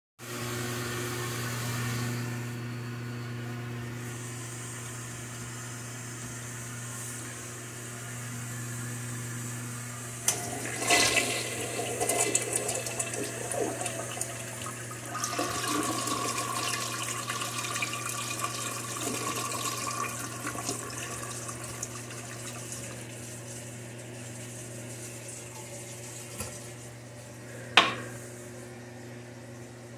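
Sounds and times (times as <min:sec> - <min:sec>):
toilet flushing: 0:10.2 - 0:26.9
tank refilling tone: 0:10.3 - 0:24.2.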